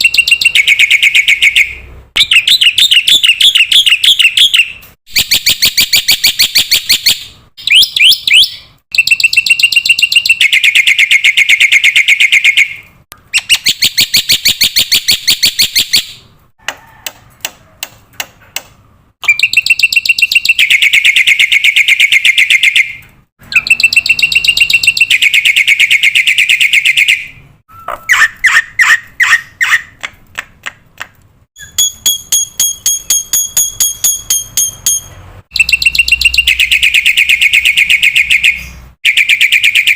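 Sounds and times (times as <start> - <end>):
shrill whistled bird notes: 0.0 - 16.2, 19.2 - 29.8, 31.6 - 33.1, 35.6 - 39.9
bird harsh repeated calls: 0.0 - 16.3, 19.2 - 30.8, 35.5 - 39.9.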